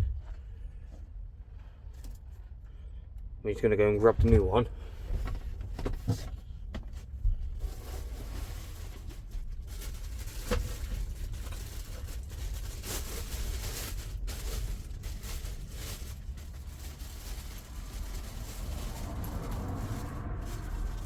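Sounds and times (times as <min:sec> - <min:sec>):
low rumble: 0:00.0 - 0:01.8, 0:14.0 - 0:21.0.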